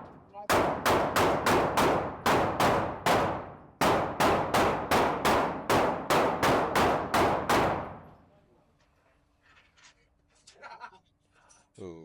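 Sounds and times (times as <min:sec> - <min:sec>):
pistol shots: 0:00.0 - 0:08.2.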